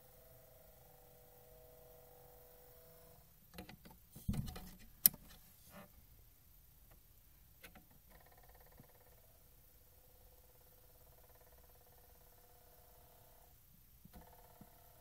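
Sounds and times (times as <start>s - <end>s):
record player whirring whine: 0.0s - 15.0s
clicks and knocks: 3.6s - 5.3s.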